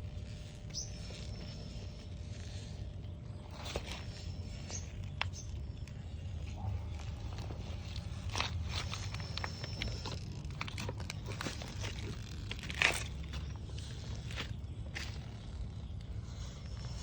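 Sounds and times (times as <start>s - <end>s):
steady low rumble: 0.0s - 17.0s
toy car tyres crunching over rocks: 3.4s - 17.0s.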